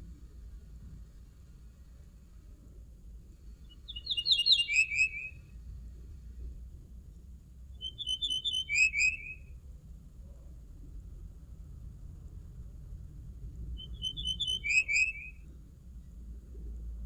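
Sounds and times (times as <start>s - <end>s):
linnet singing: 3.6s - 5.6s, 7.8s - 9.6s, 13.8s - 15.5s.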